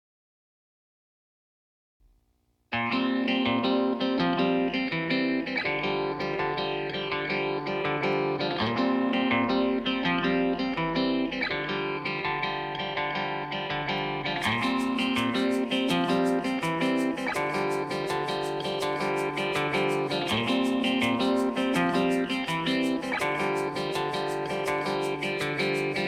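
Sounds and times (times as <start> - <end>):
plucked guitar music: 2.7 - 26.0
quick ticking beat: 14.4 - 26.0.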